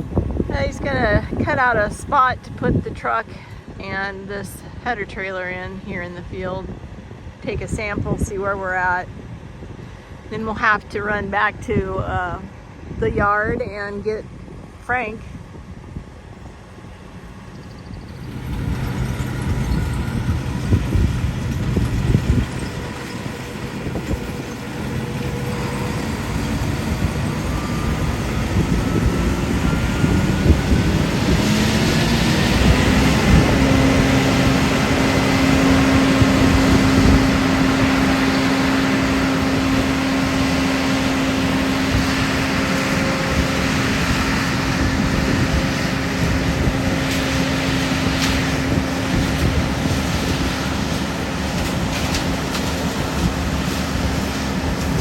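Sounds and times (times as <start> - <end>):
rumbling road noise: 0.0 - 55.0
vehicle engine running: 16.2 - 55.0.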